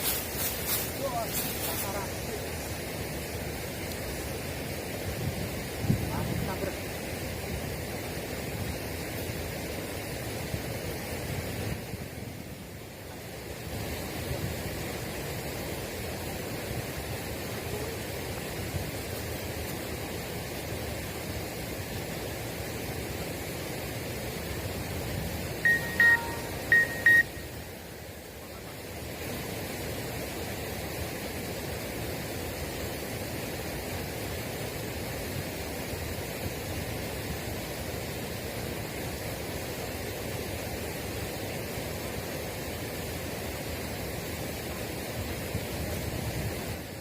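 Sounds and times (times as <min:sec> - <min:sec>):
rushing outdoor noise: 0:00.0 - 0:47.0
short high electronic beeps: 0:25.6 - 0:27.5.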